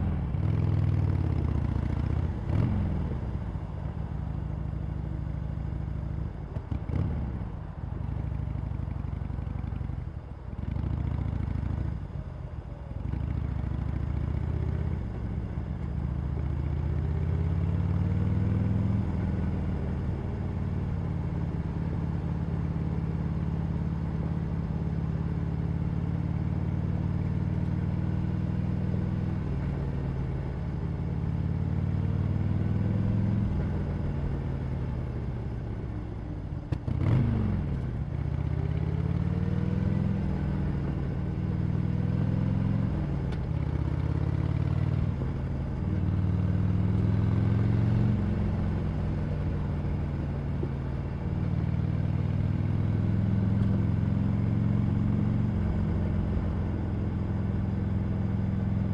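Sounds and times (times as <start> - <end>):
motorcycle engine revving through gears: 0.0 - 3.4, 36.7 - 56.6.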